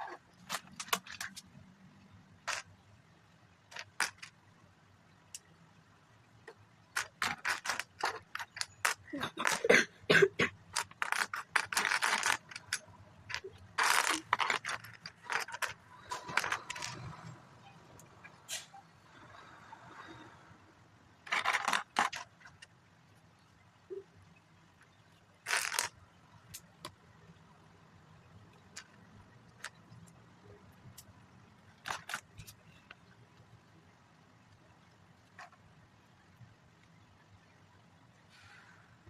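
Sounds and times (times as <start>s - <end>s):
plastic pieces clicking and rattling: 0.4s - 1.6s, 2.4s - 2.7s, 3.7s - 4.4s, 6.9s - 9.7s, 10.7s - 17.3s, 21.2s - 22.7s, 25.4s - 26.9s, 28.6s - 30.1s, 31.8s - 32.6s.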